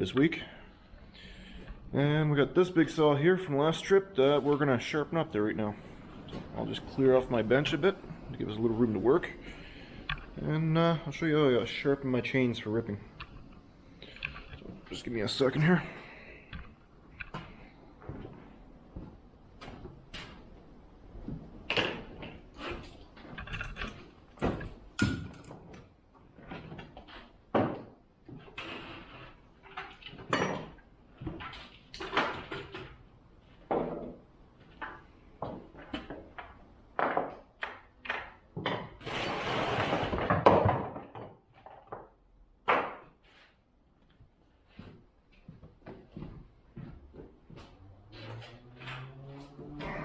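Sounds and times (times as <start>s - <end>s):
rough scraping sound: 39.0s - 40.1s.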